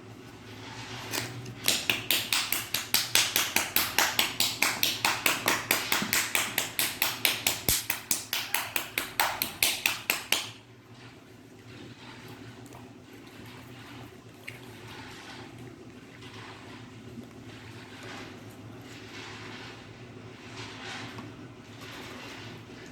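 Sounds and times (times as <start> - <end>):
rapid sharp tapping: 1.6 - 10.6.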